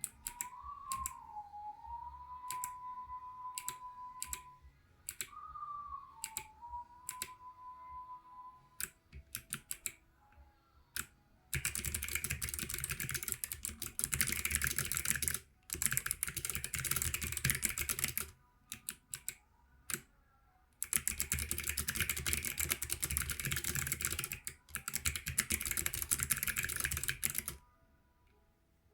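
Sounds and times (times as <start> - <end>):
clicky keyboard typing: 0.0 - 1.2, 2.4 - 2.8, 3.6 - 4.5, 5.1 - 5.4, 6.2 - 7.4, 8.8 - 10.0, 11.0 - 20.1, 20.8 - 27.6.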